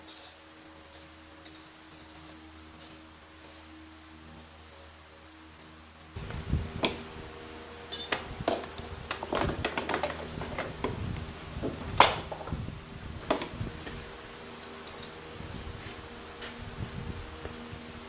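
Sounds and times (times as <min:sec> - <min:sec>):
low hum: 0:06.2 - 0:18.0
objects knocking and clanking: 0:07.9 - 0:14.0.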